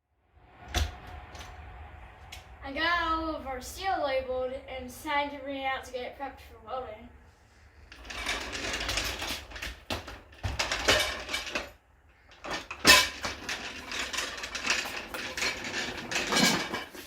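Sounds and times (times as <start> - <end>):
steel pieces clattering and scraping: 7.9 - 17.0.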